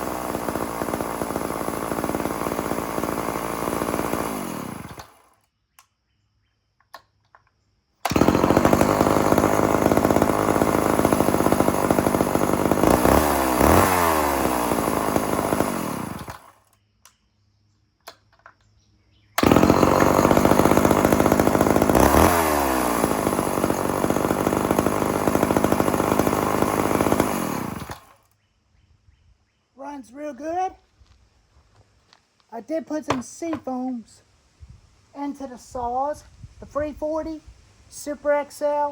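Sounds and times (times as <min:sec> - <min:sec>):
chainsaw running and revving: 0:00.0 - 0:05.4, 0:08.1 - 0:16.7, 0:19.4 - 0:28.2.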